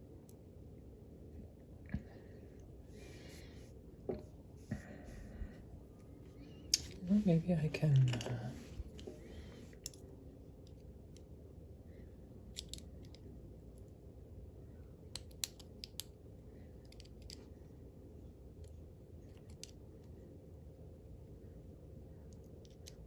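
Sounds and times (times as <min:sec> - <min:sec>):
metallic clicks of padlock picking: 0:12.5 - 0:13.2, 0:15.2 - 0:16.1.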